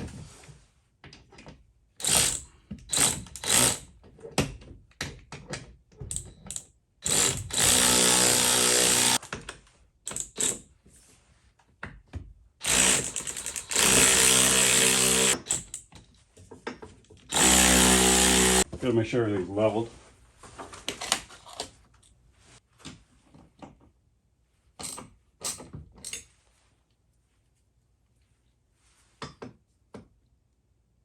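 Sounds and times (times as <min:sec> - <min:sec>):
tools clicking and knocking: 0:01.0 - 0:07.8, 0:09.1 - 0:10.7, 0:11.8 - 0:18.7, 0:24.8 - 0:26.4
power drill running: 0:02.0 - 0:03.8, 0:07.0 - 0:09.2, 0:12.6 - 0:15.6, 0:17.3 - 0:18.7.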